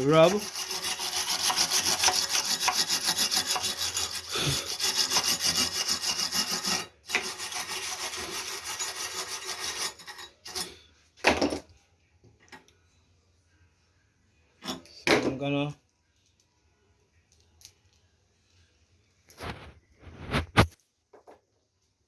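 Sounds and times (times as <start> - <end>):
wire brush scrubbing steel: 0.0 - 10.7.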